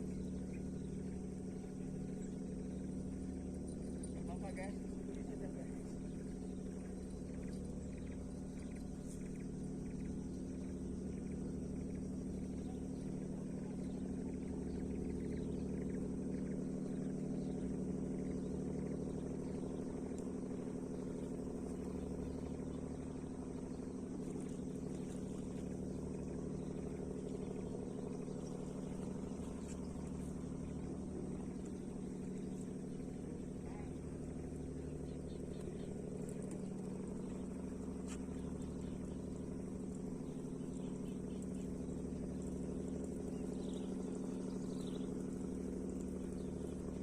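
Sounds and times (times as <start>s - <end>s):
low motor hum: 0.0s - 47.0s.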